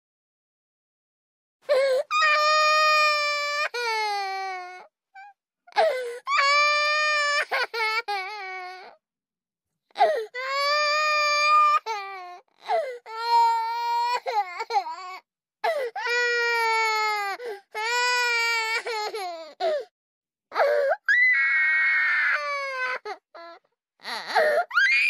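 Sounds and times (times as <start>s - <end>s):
baby crying: 20.5s - 25.0s.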